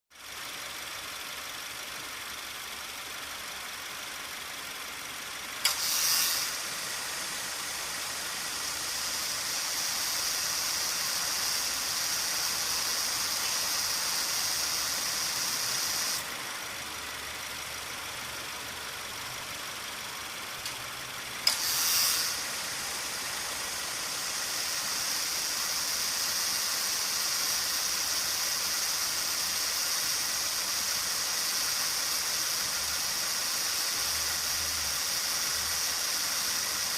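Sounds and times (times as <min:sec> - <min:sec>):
car engine idling: 0:00.2 - 0:36.9
compressor high-pitched whine: 0:05.5 - 0:36.9
compressor clutch click: 0:05.6 - 0:06.8, 0:20.6 - 0:22.8.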